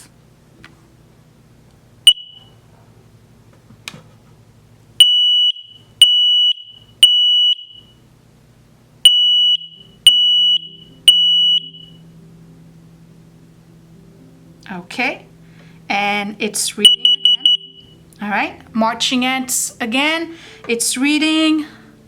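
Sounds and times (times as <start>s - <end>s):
alarm chirp: 2.0s - 2.5s, 5.0s - 7.9s, 9.1s - 12.0s, 16.8s - 18.0s
high-pitched alarm beeps: 2.1s - 2.5s, 5.0s - 7.9s, 9.1s - 12.0s, 16.8s - 18.0s.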